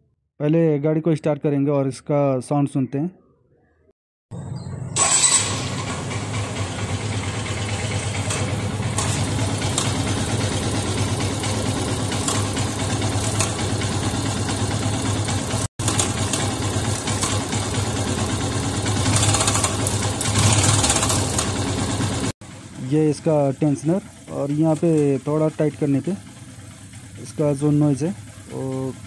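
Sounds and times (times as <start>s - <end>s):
motorcycle engine idling: 4.3s - 29.0s.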